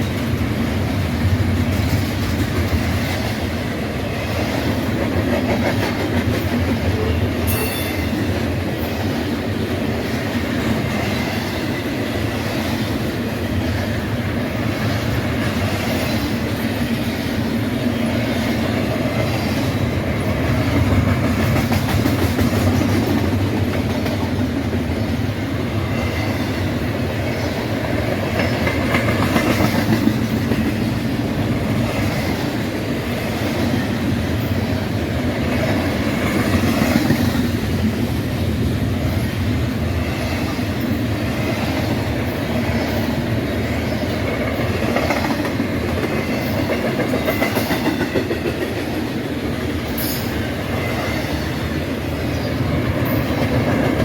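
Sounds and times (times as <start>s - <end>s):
freight train wheels on rails: 0.0s - 54.0s.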